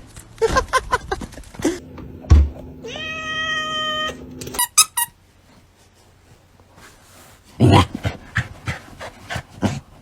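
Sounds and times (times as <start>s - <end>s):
cat meowing: 2.7s - 4.6s.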